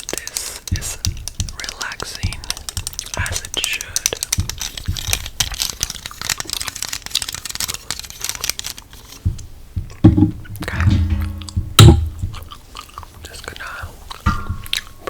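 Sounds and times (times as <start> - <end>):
gum chewing: 0.0 - 8.8.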